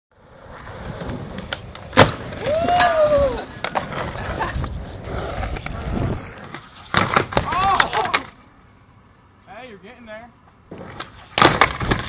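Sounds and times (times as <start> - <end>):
skateboard wheels rolling on concrete: 0.1 - 12.0
skateboard clack: 1.0 - 8.4, 10.5 - 12.0.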